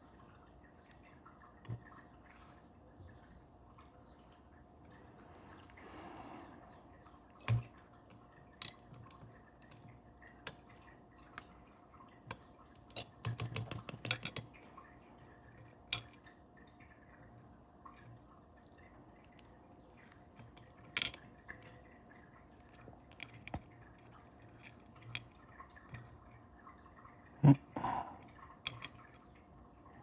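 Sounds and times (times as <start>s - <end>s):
lock parts clicking and clinking: 12.9s - 14.5s.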